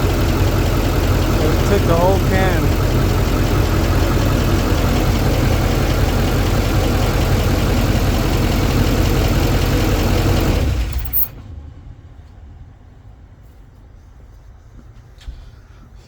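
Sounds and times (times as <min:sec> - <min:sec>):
diesel engine idling with clatter: 0:00.0 - 0:13.2.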